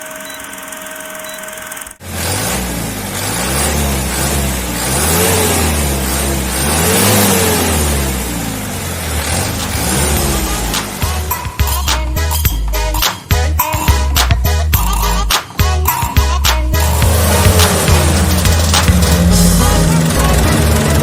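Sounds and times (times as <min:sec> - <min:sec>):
truck engine revving: 0:02.0 - 0:21.0
short steady hum: 0:16.7 - 0:21.0.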